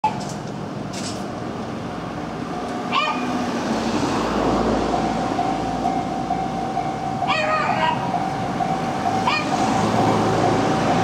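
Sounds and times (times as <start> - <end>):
train rumble: 0.0 - 11.0
short yelp: 2.9 - 3.3
crossing alarm high tone: 4.7 - 11.0.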